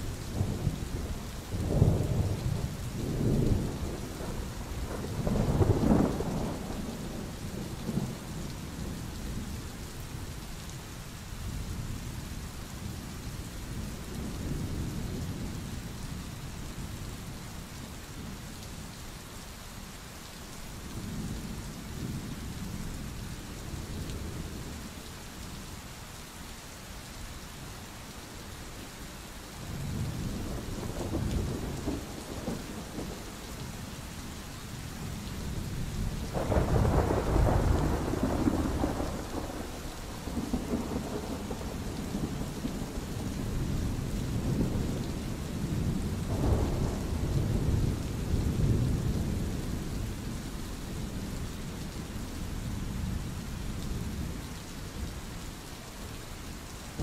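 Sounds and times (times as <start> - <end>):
steady rain: 0.0 - 57.0
thunder rumbling: 35.0 - 52.0.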